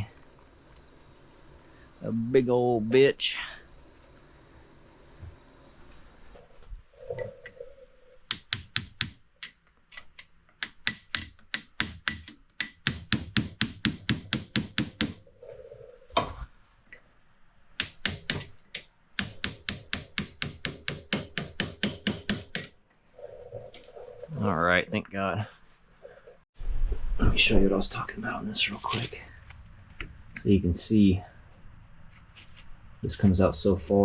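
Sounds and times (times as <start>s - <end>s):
hammer striking metal: 8.3s - 15.2s, 17.8s - 22.8s.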